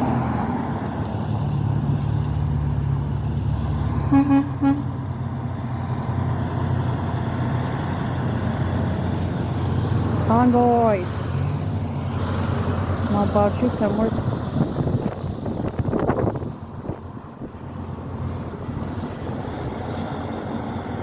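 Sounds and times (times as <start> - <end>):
heavy vehicle engine drone: 0.0 - 21.0
road traffic passing: 0.0 - 21.0
vehicle horn toots: 4.0 - 4.9.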